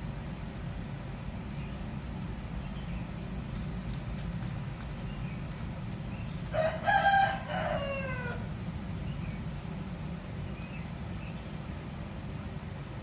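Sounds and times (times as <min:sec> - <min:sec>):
low background rumble: 0:00.0 - 0:13.0
rooster crowing: 0:06.5 - 0:08.5.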